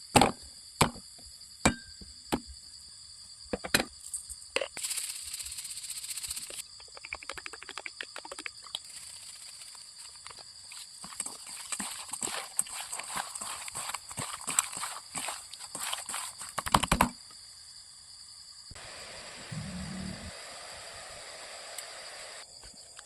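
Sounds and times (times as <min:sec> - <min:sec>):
high-pitched hum: 0:19.2 - 0:20.5.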